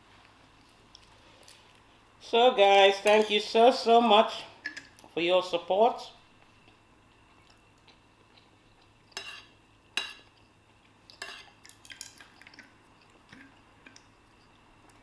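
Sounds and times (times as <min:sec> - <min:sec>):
cutlery clinking against a plate: 0:09.1 - 0:10.3, 0:11.1 - 0:12.6.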